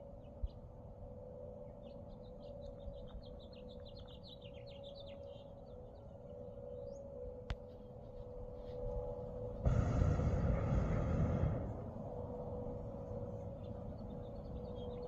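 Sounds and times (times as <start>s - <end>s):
steady hum: 9.4s - 15.0s.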